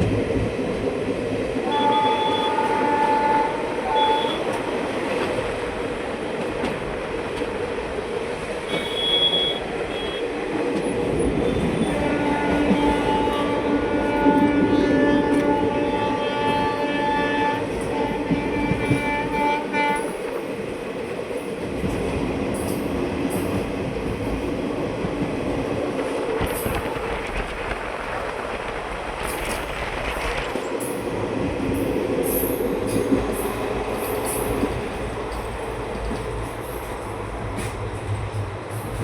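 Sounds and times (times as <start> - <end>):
train wheels rumbling over rails: 0.0 - 39.0
train horn blasts: 1.6 - 4.6, 11.5 - 20.2.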